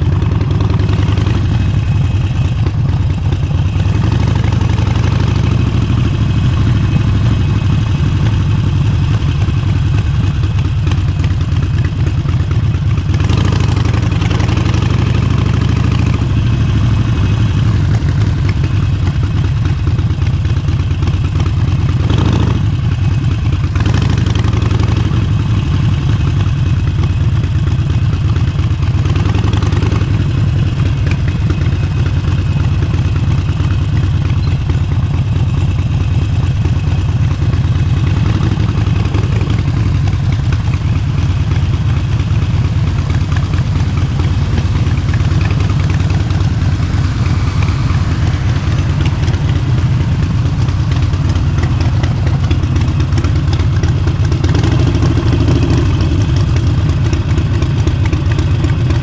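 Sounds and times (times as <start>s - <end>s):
motorcycle engine running: 0.0s - 59.0s
wind and road rush: 0.0s - 59.0s.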